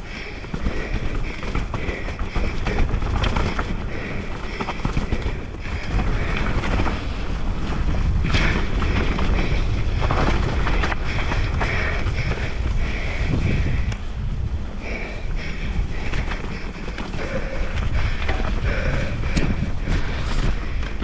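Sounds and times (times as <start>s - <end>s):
bike tyres rolling over dirt: 0.0s - 21.0s
wind buffeting microphone: 0.0s - 21.0s
bike knocking over bumps: 0.1s - 12.3s.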